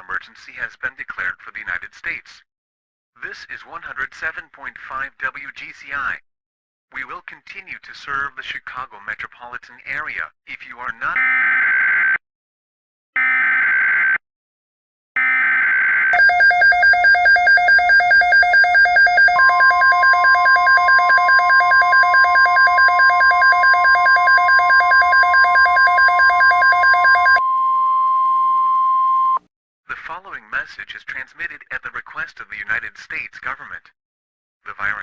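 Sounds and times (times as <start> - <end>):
digital data bursts: 16.2 - 27.4
pulsing electronic alert tone: 16.2 - 27.6
steady high tone: 16.2 - 29.4.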